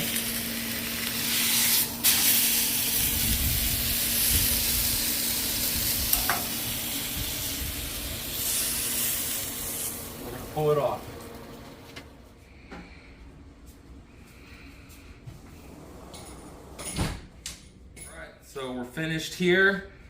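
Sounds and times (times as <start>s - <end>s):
steak sizzling on a griddle: 0.0s - 10.2s.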